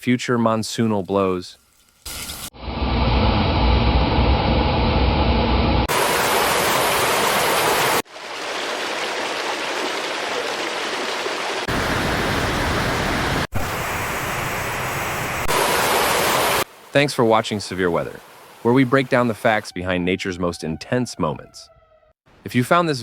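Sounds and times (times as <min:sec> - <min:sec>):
heavy low rumble: 0:02.6 - 0:05.9
rushing floodwater: 0:05.9 - 0:13.5, 0:15.4 - 0:19.7.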